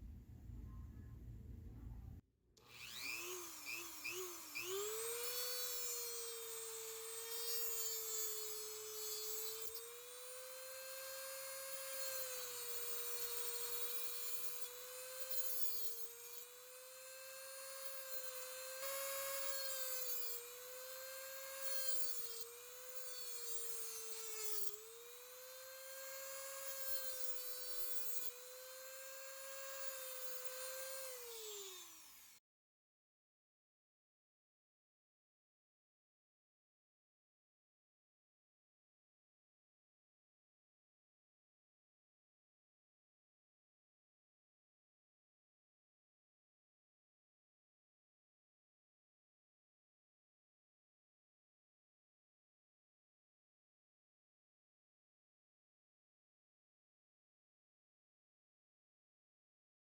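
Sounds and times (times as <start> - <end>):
small electric motor whining: 2.6 - 32.4.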